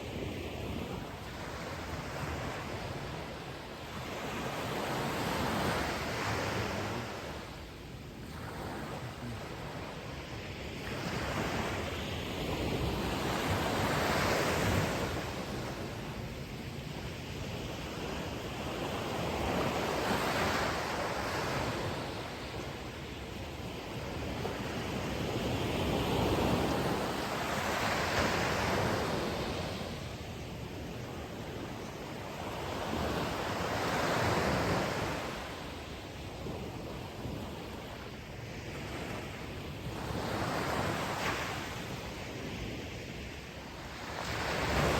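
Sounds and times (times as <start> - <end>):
ocean surf breaking on shore: 0.0 - 16.3.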